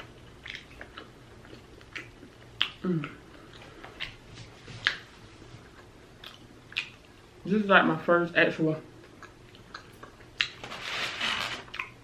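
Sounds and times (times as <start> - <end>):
person chewing food: 0.0 - 7.4, 8.9 - 10.8, 11.6 - 12.0
person humming: 2.8 - 3.2.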